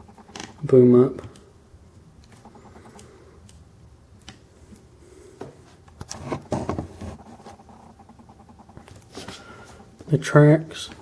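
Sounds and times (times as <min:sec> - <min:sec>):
knocks and rustles: 0:05.4 - 0:07.4.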